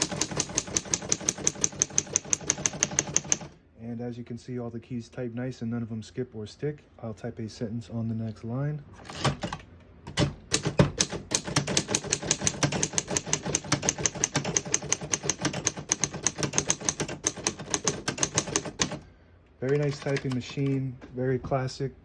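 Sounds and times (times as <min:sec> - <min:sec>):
typewriter keystrokes: 0:00.0 - 0:03.5, 0:09.1 - 0:19.0, 0:19.6 - 0:20.8.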